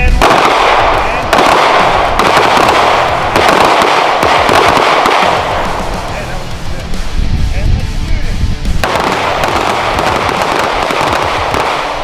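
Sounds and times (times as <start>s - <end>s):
handguns firing rapidly: 0.0s - 6.1s, 8.8s - 12.0s.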